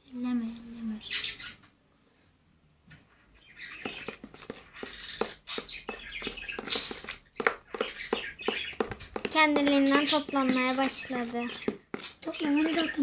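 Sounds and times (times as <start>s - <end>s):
pet bird chirping: 0.9s - 1.6s, 3.4s - 13.0s.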